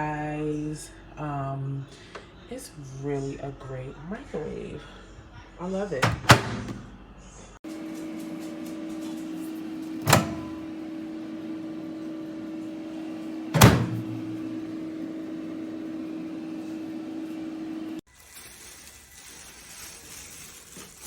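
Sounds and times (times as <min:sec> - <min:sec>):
microwave oven humming: 0:07.7 - 0:18.0.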